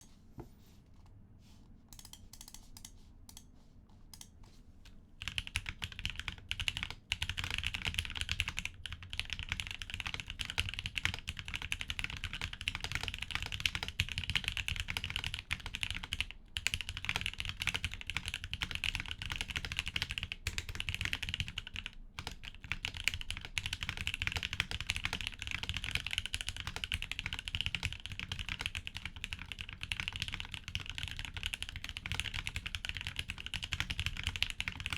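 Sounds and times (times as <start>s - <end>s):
mechanical keyboard typing: 1.9s - 3.4s, 5.2s - 34.9s.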